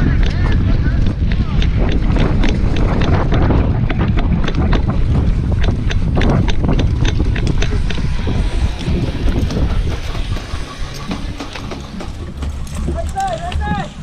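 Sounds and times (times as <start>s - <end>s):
sharp clicks and knocks: 0.0s - 13.7s
wind buffeting microphone: 0.0s - 14.0s.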